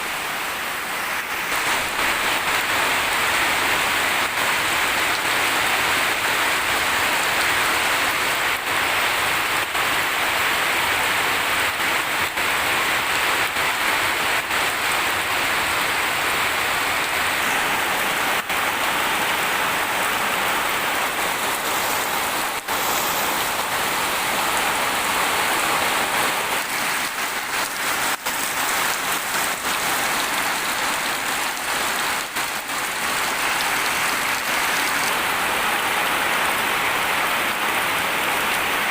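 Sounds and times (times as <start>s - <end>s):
heavy rain hissing: 0.0s - 38.9s.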